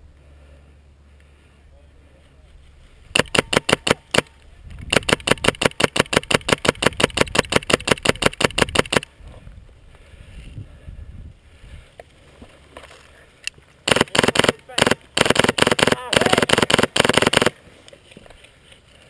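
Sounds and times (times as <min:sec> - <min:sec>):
faint rustling and handling noise: 0:01.2 - 0:03.1, 0:11.8 - 0:13.8, 0:17.6 - 0:19.0
airsoft rifle full-auto burst: 0:03.2 - 0:04.3, 0:04.9 - 0:09.1, 0:13.8 - 0:17.6.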